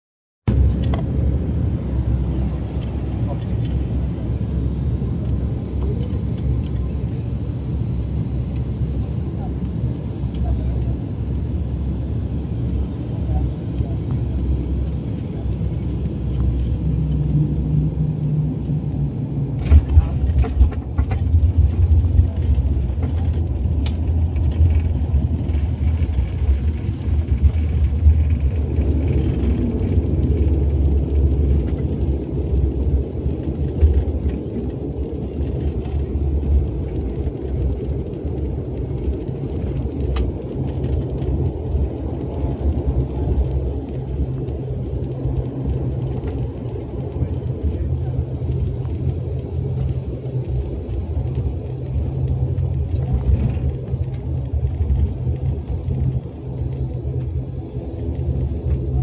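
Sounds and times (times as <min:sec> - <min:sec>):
engine and airflow rumble: 0:00.4 - 0:59.0.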